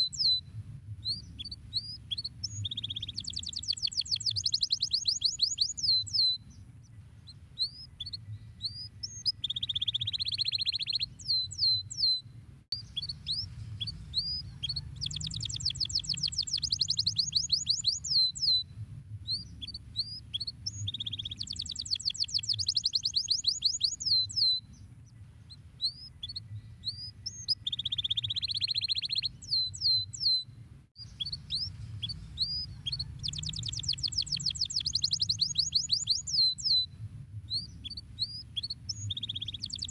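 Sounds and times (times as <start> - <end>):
canary singing: 0.0 - 0.4, 1.0 - 18.6, 19.3 - 30.4, 31.0 - 36.9, 37.5 - 39.9
low hum: 12.2 - 16.3, 18.5 - 21.4, 30.5 - 34.4.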